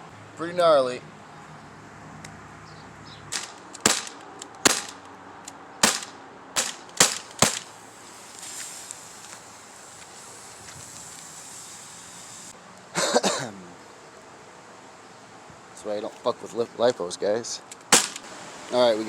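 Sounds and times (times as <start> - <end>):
pellet gun pops: 3.3 - 5.1, 5.8 - 7.7, 17.7 - 18.3
pellets striking batteries: 3.3 - 5.1, 5.8 - 9.4, 17.9 - 18.3.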